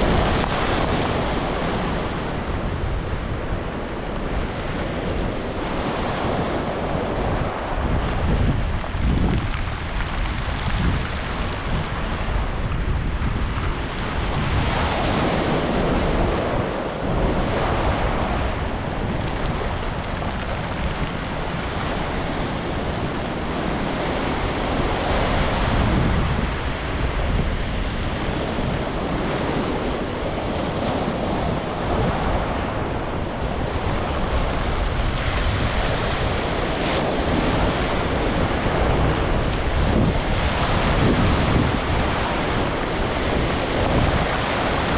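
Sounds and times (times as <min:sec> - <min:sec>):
ocean waves breaking on beach: 0:00.0 - 0:44.9
wind buffeting microphone: 0:00.0 - 0:44.9.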